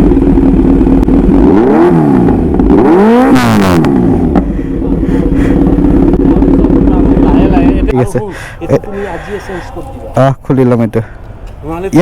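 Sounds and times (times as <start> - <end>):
loud motorcycle engine revving: 0.0 - 8.0.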